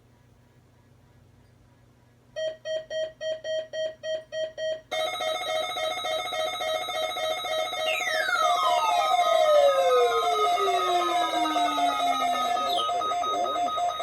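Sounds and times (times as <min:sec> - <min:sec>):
steady multi-pitch electronic tone: 0:06.8 - 0:14.0.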